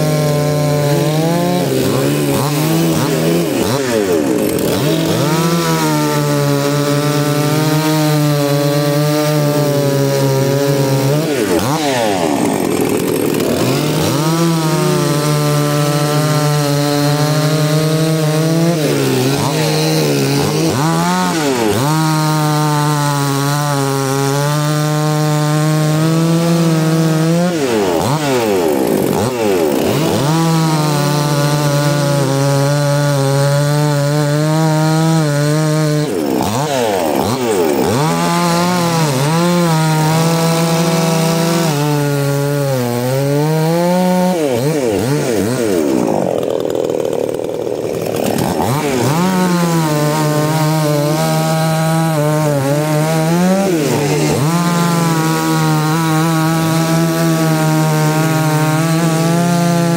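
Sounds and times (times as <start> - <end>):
chainsaw cutting wood: 0.0 - 59.9.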